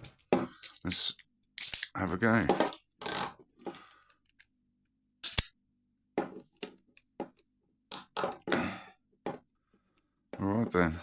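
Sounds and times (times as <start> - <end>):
handcuffs clinking and clicking: 0.0 - 2.0, 2.7 - 4.5, 5.2 - 5.6.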